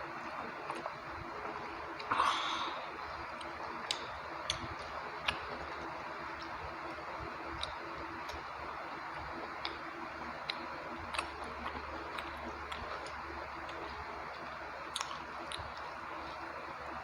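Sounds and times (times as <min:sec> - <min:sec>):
person chewing: 0:02.0 - 0:05.7, 0:10.5 - 0:15.9.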